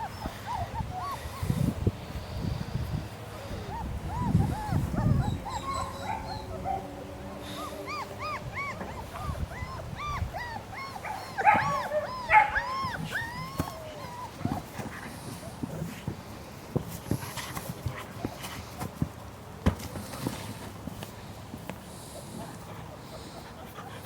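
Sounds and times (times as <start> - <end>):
puppies whimpering and squeaking: 0.0 - 15.7.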